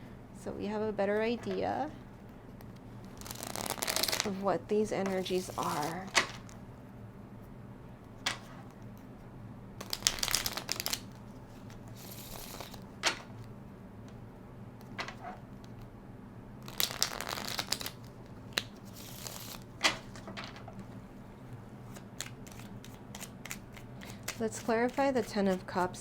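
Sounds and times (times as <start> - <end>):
cards rustling and riffling: 3.1 - 4.3, 5.1 - 6.6, 9.8 - 13.3, 16.7 - 20.6, 21.9 - 25.6.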